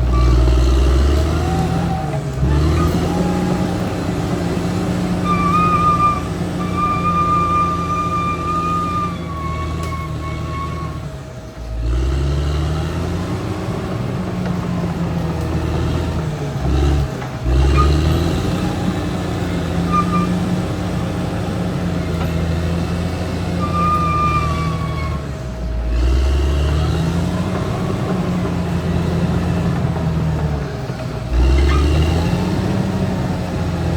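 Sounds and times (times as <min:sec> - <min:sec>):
bulldozer diesel engine working: 0:00.0 - 0:33.9
high-pitched squeals: 0:05.0 - 0:11.3, 0:19.7 - 0:20.5, 0:23.5 - 0:25.4.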